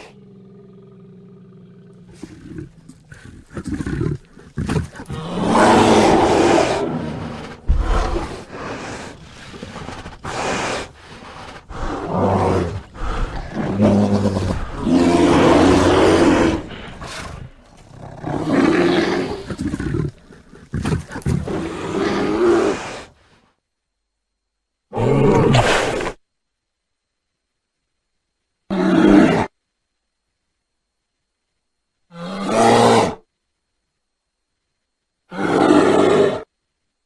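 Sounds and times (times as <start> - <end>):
bear roaring: 0.0 - 23.1, 24.9 - 26.2, 28.7 - 29.5, 32.1 - 33.2, 35.3 - 36.5.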